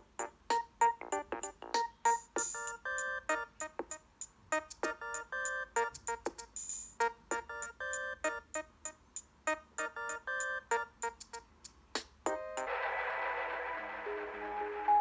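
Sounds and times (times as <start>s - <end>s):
phone ringtone melody: 0.2s - 4.0s, 4.6s - 6.0s, 7.0s - 8.9s, 9.5s - 11.2s.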